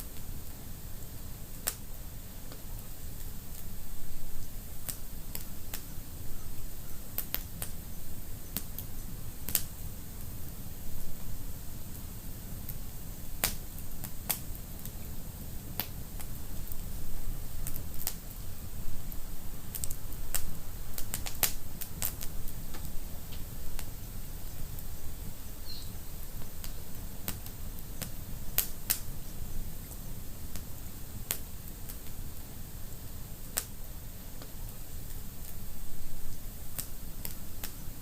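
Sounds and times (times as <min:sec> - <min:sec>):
wood fire crackling: 0:00.0 - 0:38.0
sharp pops and snaps: 0:01.6 - 0:01.8, 0:04.8 - 0:05.9, 0:07.2 - 0:07.8, 0:08.5 - 0:08.9, 0:09.5 - 0:09.7, 0:13.4 - 0:15.0, 0:15.8 - 0:16.8, 0:17.6 - 0:18.3, 0:19.7 - 0:24.0, 0:26.4 - 0:29.1, 0:31.3 - 0:32.2, 0:33.5 - 0:33.7, 0:36.8 - 0:37.8.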